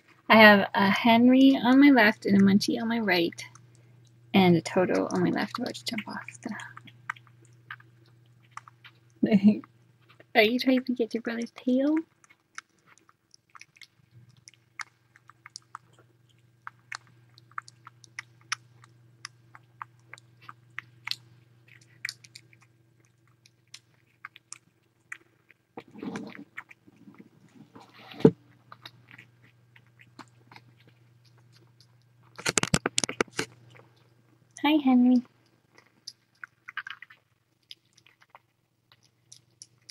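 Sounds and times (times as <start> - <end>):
low steady hum: 0.0 - 39.9
kittens smacking mouths: 12.0 - 34.0.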